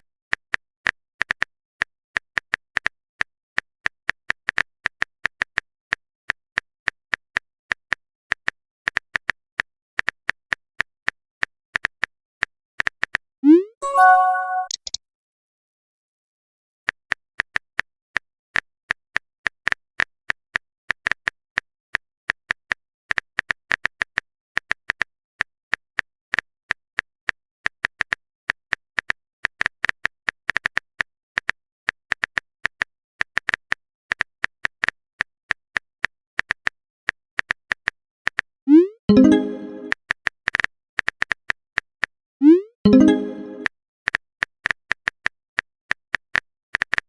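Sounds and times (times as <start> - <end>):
music: 13.8 - 14.8, 39.1 - 40.0, 42.9 - 43.7
phone keyboard typing clicks: 13.8 - 15.0.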